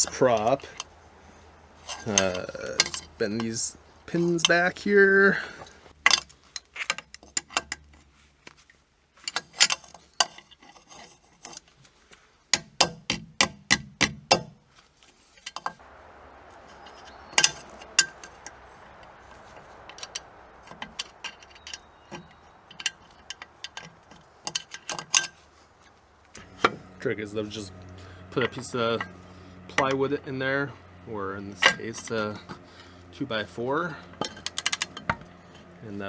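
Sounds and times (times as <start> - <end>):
faint steady hiss: 0.0 - 7.1, 15.4 - 36.0.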